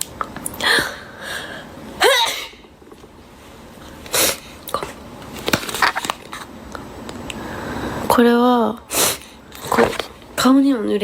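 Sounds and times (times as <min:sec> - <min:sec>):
person sneezing: 0:02.0 - 0:02.6.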